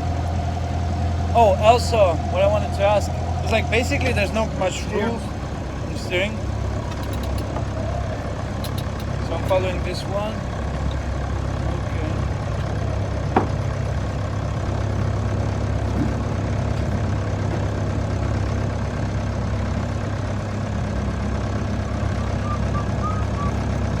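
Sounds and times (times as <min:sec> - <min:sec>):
boat engine droning: 0:00.0 - 0:24.0
sharp click: 0:06.9 - 0:07.6, 0:08.6 - 0:09.1.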